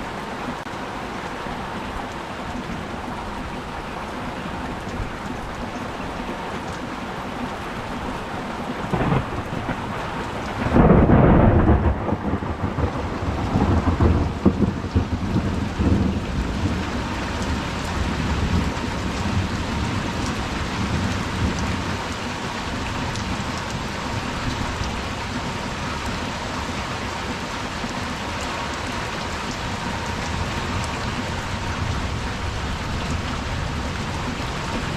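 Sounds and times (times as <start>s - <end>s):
steady rain: 0.0s - 34.9s
thunder rumble: 8.8s - 34.9s.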